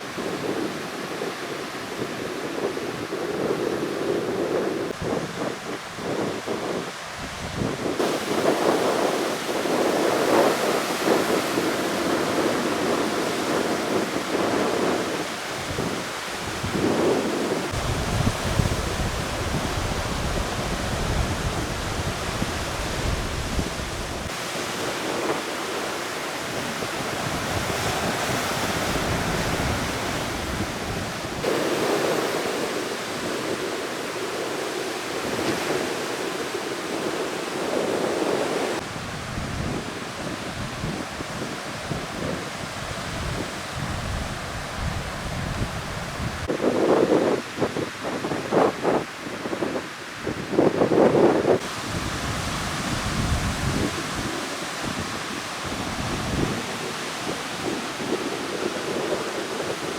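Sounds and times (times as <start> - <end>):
heavy surf breaking: 0.0 - 59.9
wind buffeting microphone: 0.0 - 59.9.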